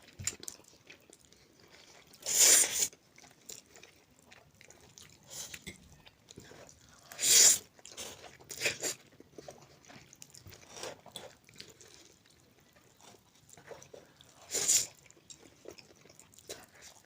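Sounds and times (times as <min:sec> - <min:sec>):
chewing and mouth noises: 0:00.0 - 0:17.0
short loud eating bursts: 0:02.2 - 0:02.9, 0:14.5 - 0:15.0.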